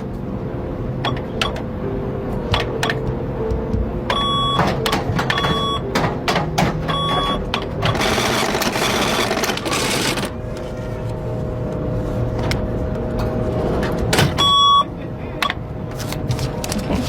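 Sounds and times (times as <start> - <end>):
cash register mechanical rattle: 7.0 - 10.4.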